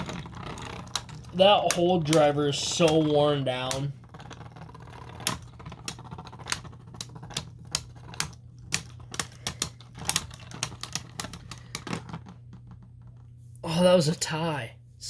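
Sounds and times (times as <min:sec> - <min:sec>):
spinning tops clacking: 0:00.0 - 0:11.6.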